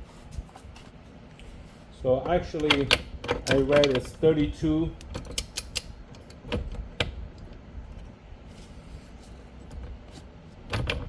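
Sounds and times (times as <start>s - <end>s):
low steady background rumble: 0.0s - 11.0s
sharp metallic clicks: 5.0s - 7.2s.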